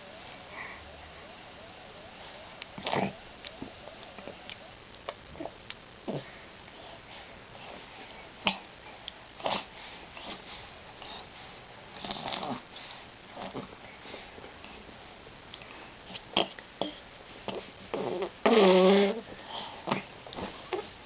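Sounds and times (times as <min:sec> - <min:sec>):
baby sniffing and grunting: 0:09.4 - 0:11.3.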